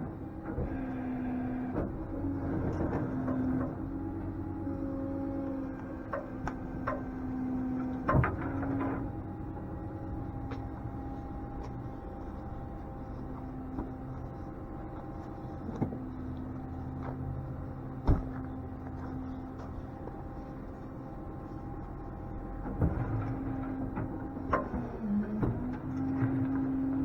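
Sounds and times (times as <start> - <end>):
tow truck engine and hydraulics hum: 0.0 - 27.0.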